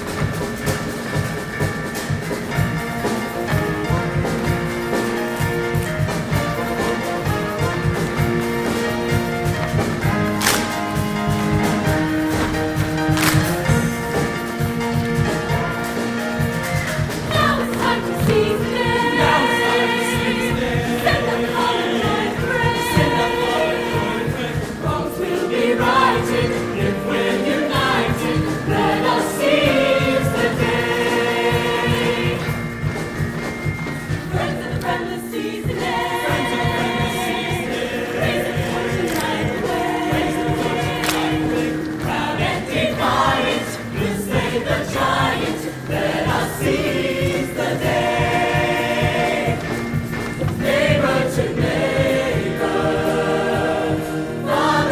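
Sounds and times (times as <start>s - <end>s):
live band playing: 0.0s - 19.3s
choir singing held chords: 0.0s - 54.9s.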